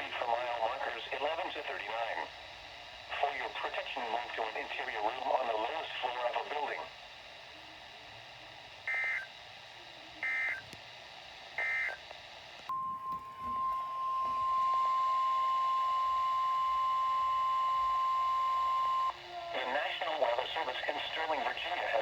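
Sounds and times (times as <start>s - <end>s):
steady warning alarm tone: 8.8s - 9.4s, 10.2s - 10.7s, 11.6s - 12.0s, 12.7s - 22.0s.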